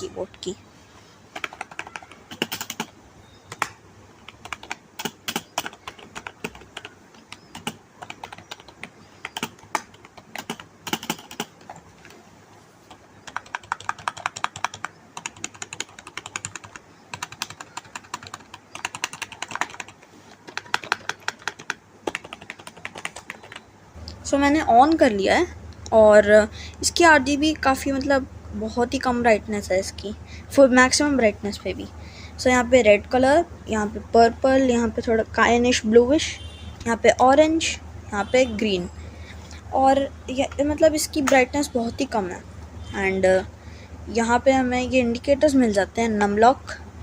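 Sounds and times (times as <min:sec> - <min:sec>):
keyboard typing: 0:01.3 - 0:12.2, 0:12.8 - 0:24.2, 0:39.5 - 0:42.3.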